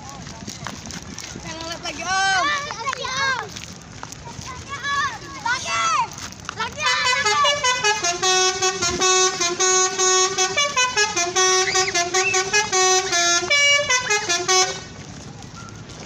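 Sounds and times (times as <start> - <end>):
multi-tone musical air horn: 6.8 - 14.9.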